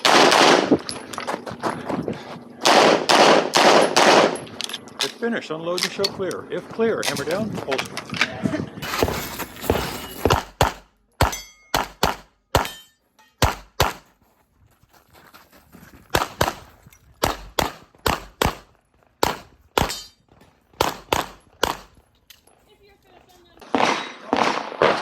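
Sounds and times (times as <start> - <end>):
rapid handgun shots: 0.0 - 0.8, 2.6 - 4.4, 10.3 - 12.8, 17.2 - 20.1, 20.8 - 21.9, 23.6 - 25.0.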